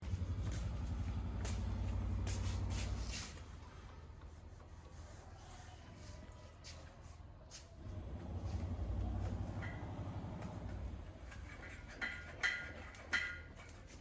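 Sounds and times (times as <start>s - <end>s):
small motorbike engine running: 0.0s - 3.1s.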